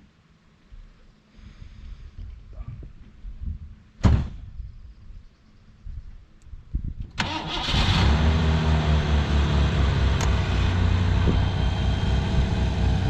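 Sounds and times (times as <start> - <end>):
car engine starting and idling: 7.2 - 13.0.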